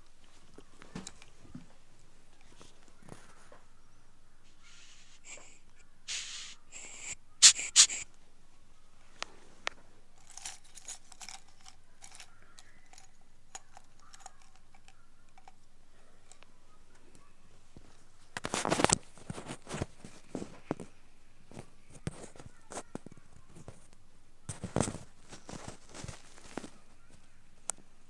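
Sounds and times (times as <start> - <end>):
ear pick scraping in ear: 4.6 - 8.0.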